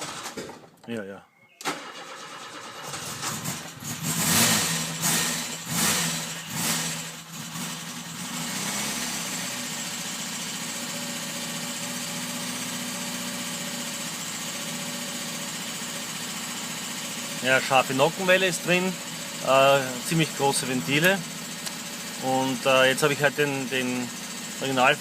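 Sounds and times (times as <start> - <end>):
car engine revving and idling: 2.8 - 25.0
engine valve ticking: 18.0 - 24.9.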